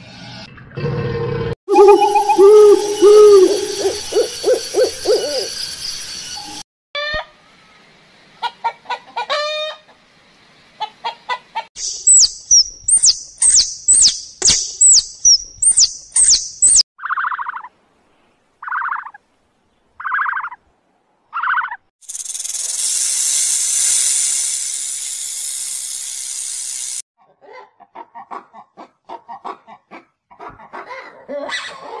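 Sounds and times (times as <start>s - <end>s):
rapid high bird chirps: 1.7s - 6.6s, 11.8s - 17.7s, 18.6s - 19.2s, 20.0s - 20.6s, 21.3s - 27.0s
long steady hiss: 22.0s - 27.0s.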